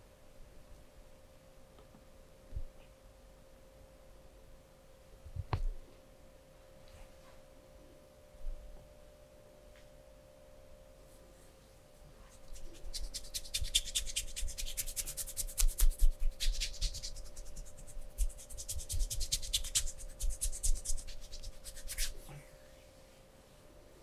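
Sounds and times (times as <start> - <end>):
faint steady hum: 0.0 - 24.0
scratching and rubbing on microphone: 12.2 - 22.3.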